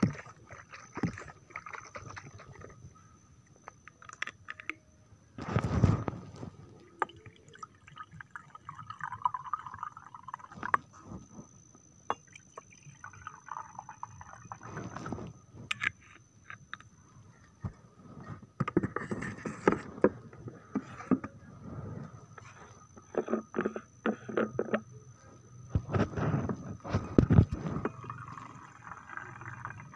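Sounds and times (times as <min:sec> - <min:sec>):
drink pouring: 0:06.8 - 0:10.9, 0:12.1 - 0:15.0, 0:27.2 - 0:29.9.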